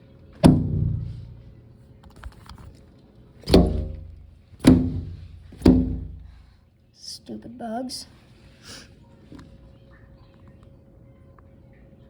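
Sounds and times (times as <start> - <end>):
heavy thuds with resonant ring: 0.4 - 1.5, 3.5 - 6.5.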